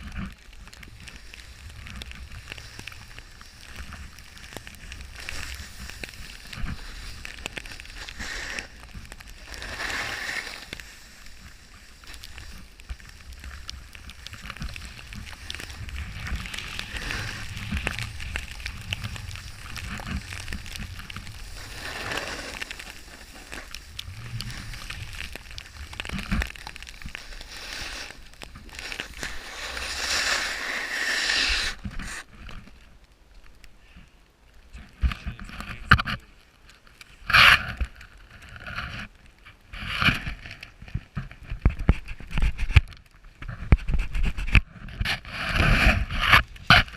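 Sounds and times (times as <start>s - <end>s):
snowboard scraping snow: 0.0s - 32.8s, 43.4s - 46.9s
wind rumble on microphone: 12.3s - 30.7s, 37.3s - 46.9s.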